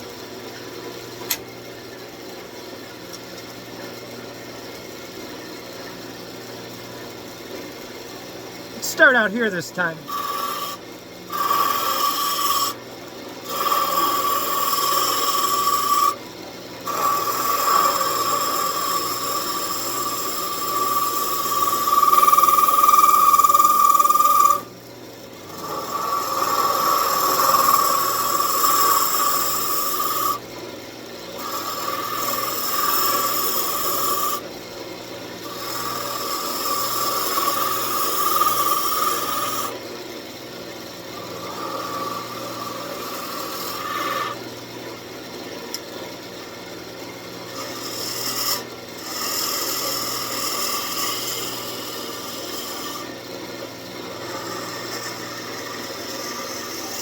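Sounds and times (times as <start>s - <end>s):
lathe whine: 10.0s - 12.8s, 13.4s - 16.2s, 25.5s - 30.4s, 35.5s - 39.8s, 41.2s - 44.4s, 47.5s - 53.1s, 54.0s - 57.0s
turning tool scraping wood: 10.0s - 12.8s, 13.5s - 16.1s, 16.9s - 24.6s, 25.6s - 30.4s, 31.4s - 34.4s, 35.6s - 39.7s, 41.2s - 44.4s, 47.6s - 53.1s, 54.1s - 57.0s.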